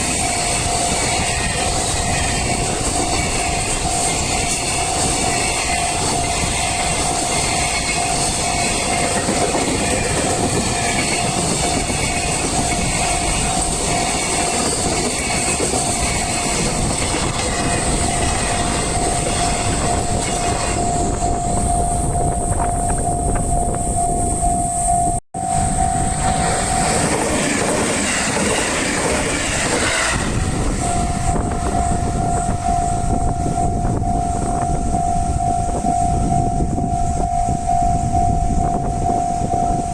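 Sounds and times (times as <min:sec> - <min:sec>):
crossing warning bell ringing: 0:00.0 - 0:39.9
train wheels rumbling: 0:00.0 - 0:39.9.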